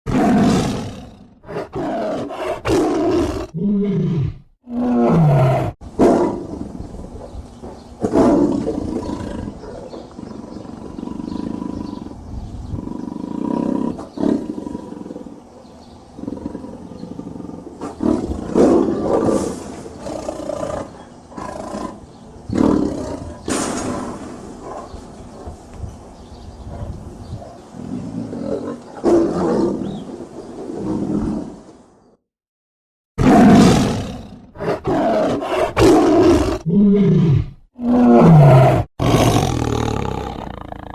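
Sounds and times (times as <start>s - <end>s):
tigers roaring and growling: 0.1s - 7.1s, 8.0s - 15.5s, 16.2s - 25.6s, 33.2s - 40.9s.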